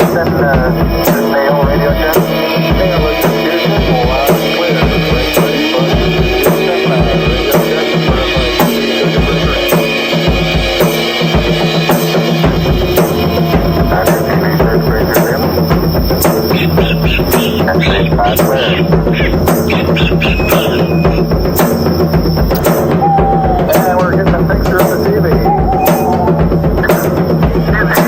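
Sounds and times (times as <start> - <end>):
bass drum thumps: 0.0 - 27.9
jungle sound effects: 0.0 - 28.0.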